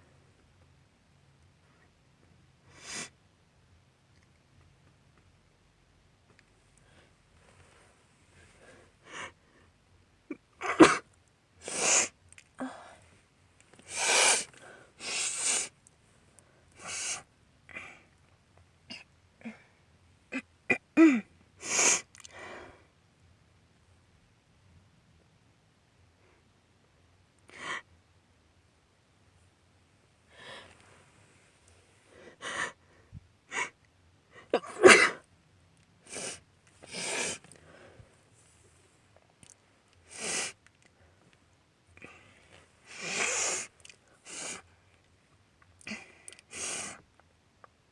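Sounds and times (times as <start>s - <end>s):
woman sniffling: 11.6s - 13.0s, 13.9s - 15.7s, 16.8s - 18.1s, 32.1s - 35.2s, 36.0s - 38.0s, 40.1s - 40.6s, 42.0s - 44.7s, 45.9s - 47.0s
woman sniffing: 13.9s - 15.7s, 36.1s - 37.5s, 42.9s - 44.7s
woman sneezing: 34.6s - 35.2s.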